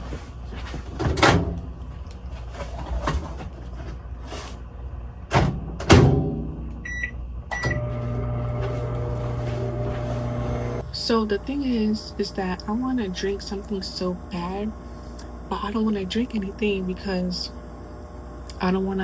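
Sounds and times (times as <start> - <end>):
microwave oven humming: 0.0 - 19.0
microwave door clunks: 5.3 - 6.5
keypad beeps: 6.9 - 7.8.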